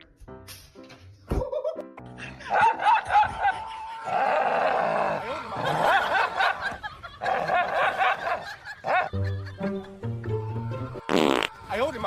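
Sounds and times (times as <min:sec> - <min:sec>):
people laughing: 0:01.4 - 0:12.0.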